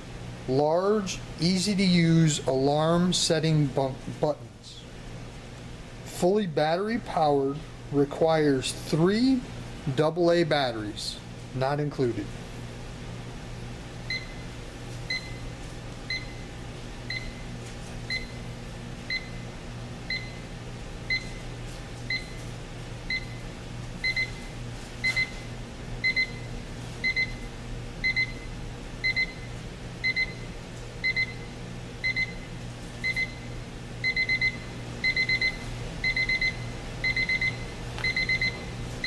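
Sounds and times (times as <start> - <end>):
steady low hum: 0.0 - 39.0
alarm clock beeping: 34.0 - 38.6.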